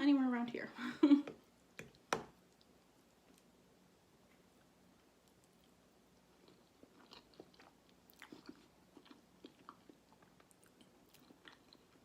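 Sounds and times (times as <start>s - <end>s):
person chewing: 4.3s - 12.0s.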